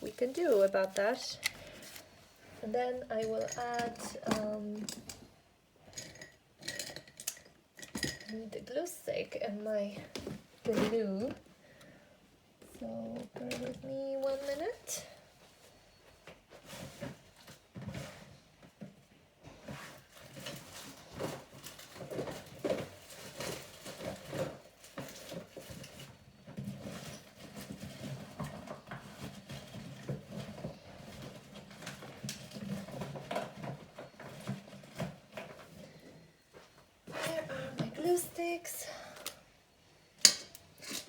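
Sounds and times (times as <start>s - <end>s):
rummaging rustling and clicks: 0.0s - 5.3s, 19.6s - 38.8s.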